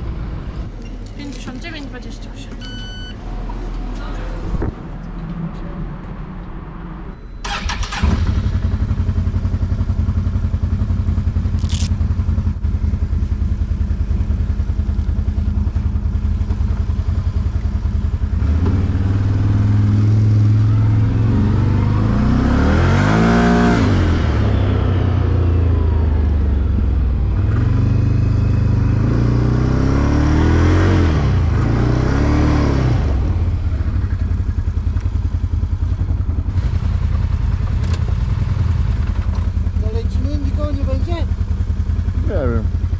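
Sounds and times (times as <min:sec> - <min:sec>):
quad engine running and revving: 0:08.0 - 0:13.3, 0:14.0 - 0:42.9.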